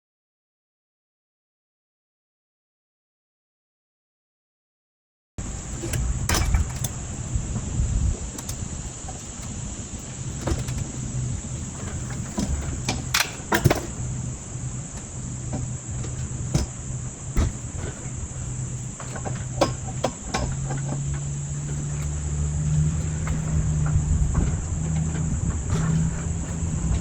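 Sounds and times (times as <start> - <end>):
low hum: 5.4 - 27.0
knocks and clicks: 15.0 - 18.2.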